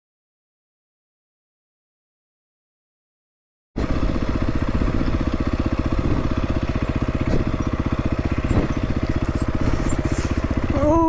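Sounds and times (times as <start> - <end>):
motorcycle engine running at low revs: 3.8 - 11.0.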